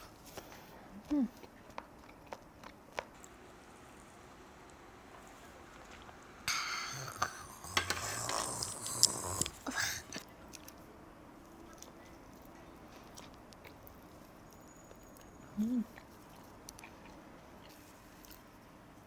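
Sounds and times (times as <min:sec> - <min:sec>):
chewing and biting food: 0:01.3 - 0:03.4, 0:07.1 - 0:18.7
faint mouth clicks: 0:06.5 - 0:09.6.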